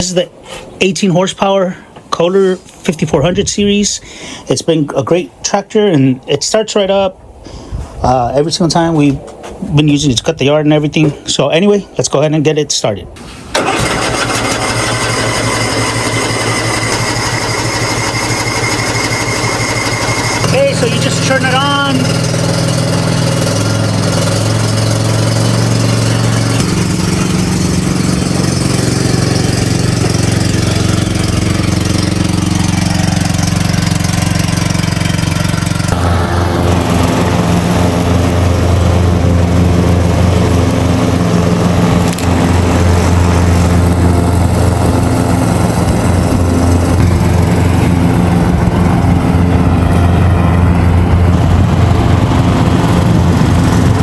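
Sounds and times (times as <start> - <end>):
mower engine running: 13.5 - 54.0.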